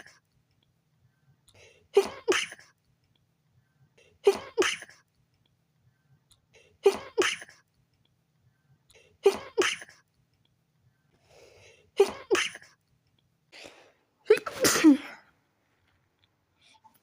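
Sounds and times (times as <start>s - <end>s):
person sneezing: 4.2s - 5.0s, 9.2s - 10.0s, 12.0s - 12.7s, 13.6s - 15.3s.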